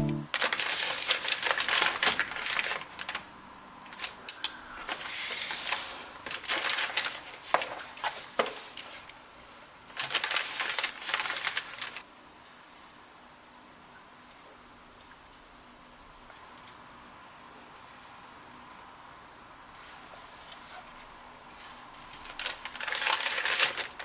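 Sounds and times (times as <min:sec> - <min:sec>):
packaging rustling: 0:10.0 - 0:12.0, 0:22.4 - 0:24.0.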